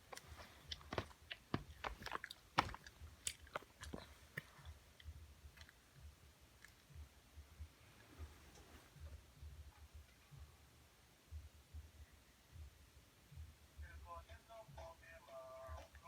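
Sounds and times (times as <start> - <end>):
dog chewing and crunching: 0.1 - 5.8.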